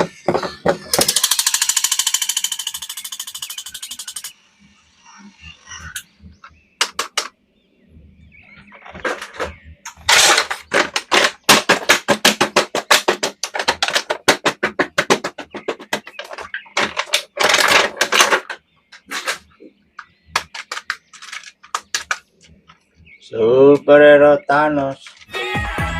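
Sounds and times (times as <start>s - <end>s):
plastic toys clicking: 0.9s - 4.4s, 9.0s - 19.4s, 20.0s - 22.5s.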